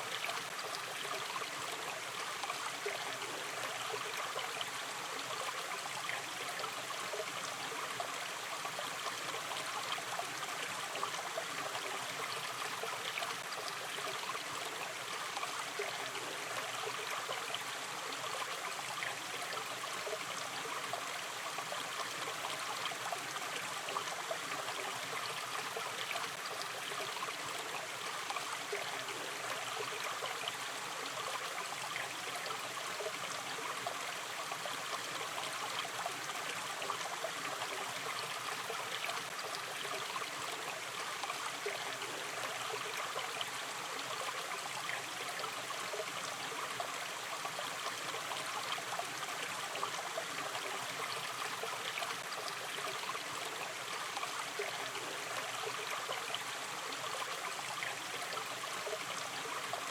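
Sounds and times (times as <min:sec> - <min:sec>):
river stream flowing: 0:00.0 - 0:59.9
water trickling and gurgling: 0:00.0 - 0:59.9.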